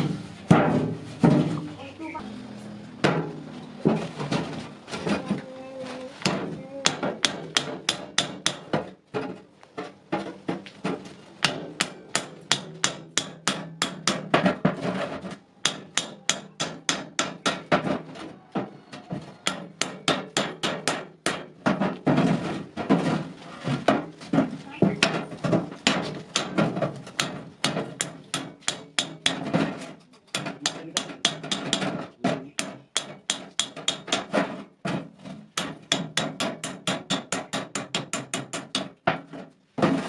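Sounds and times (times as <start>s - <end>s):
hammer striking iron: 6.3s - 9.0s, 11.4s - 15.0s, 15.6s - 18.0s, 19.4s - 22.0s, 24.8s - 39.3s.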